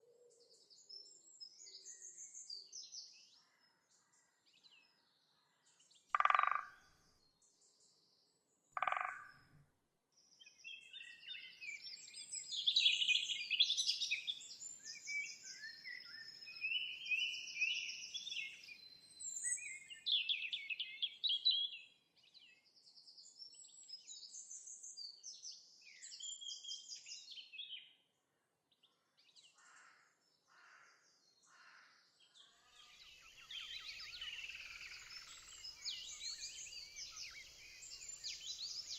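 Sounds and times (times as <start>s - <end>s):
songbirds chirping and singing: 4.6s - 6.8s, 7.4s - 9.4s, 10.4s - 28.0s, 30.2s - 38.9s
loud low bird calls: 6.2s - 6.8s, 8.8s - 9.4s.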